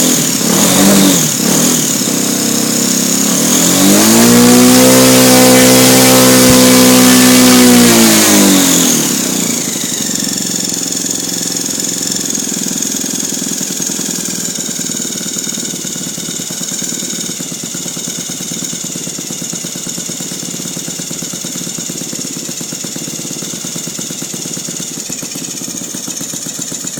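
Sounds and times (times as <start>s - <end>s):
model aircraft engine running: 0.0s - 26.9s.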